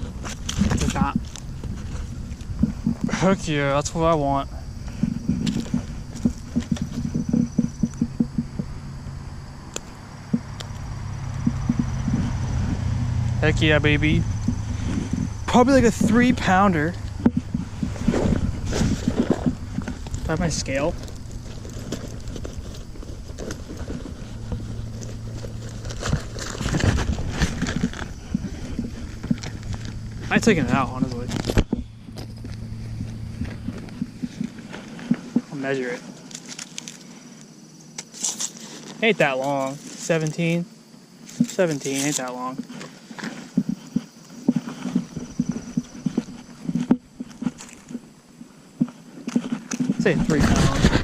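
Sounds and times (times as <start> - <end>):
fish handling knocks and thumps: 0.0 - 3.3, 4.9 - 8.8, 11.4 - 12.8, 14.4 - 35.5
gear rustling and clicking: 0.0 - 8.8, 9.7 - 40.5, 41.2 - 51.0
steady low hum: 0.0 - 51.0.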